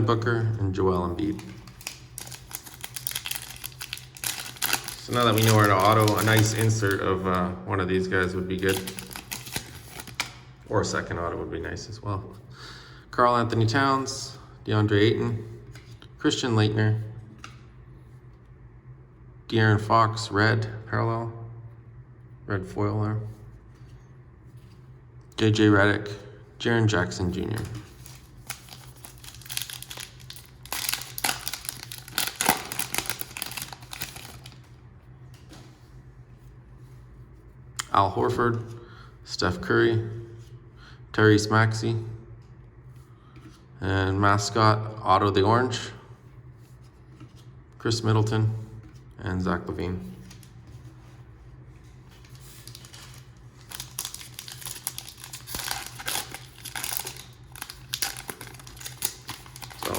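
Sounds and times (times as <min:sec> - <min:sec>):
foil wrapper crinkling and tearing: 0:01.2 - 0:07.1, 0:08.5 - 0:10.5, 0:27.6 - 0:34.6, 0:52.2 - 0:59.9.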